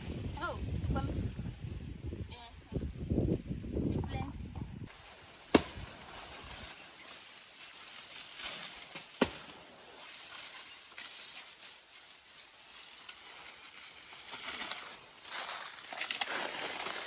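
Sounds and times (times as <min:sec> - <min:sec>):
sharp crack: 0:05.5 - 0:06.6, 0:08.2 - 0:09.6.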